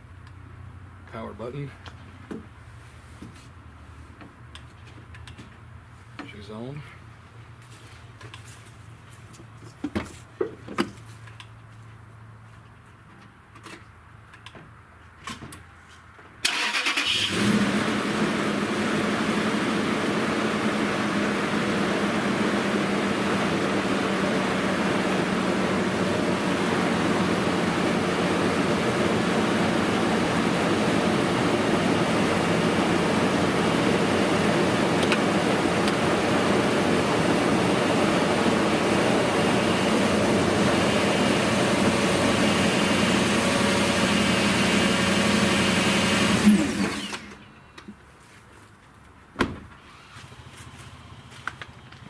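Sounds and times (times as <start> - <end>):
car engine idling: 16.5 - 46.1.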